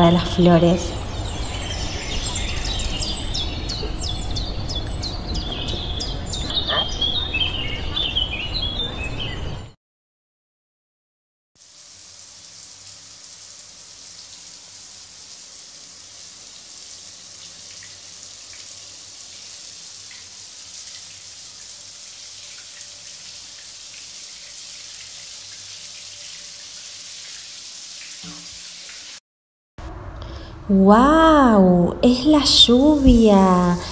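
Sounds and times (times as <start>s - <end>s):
rain falling steadily: 11.6s - 29.2s.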